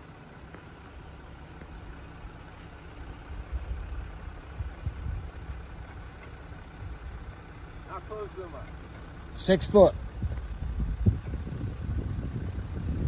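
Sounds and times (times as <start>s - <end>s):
car engine rumbling at low revs: 0.0s - 13.0s.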